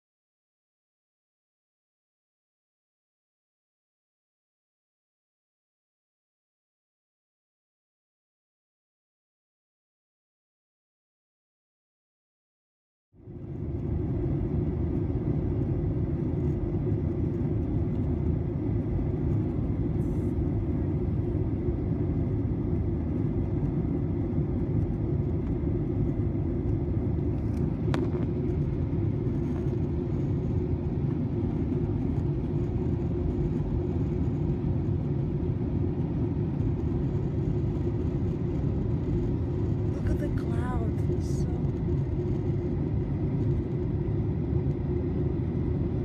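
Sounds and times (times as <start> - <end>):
airliner cabin engine rumble: 13.2 - 46.0
faint steady whine: 13.2 - 46.0.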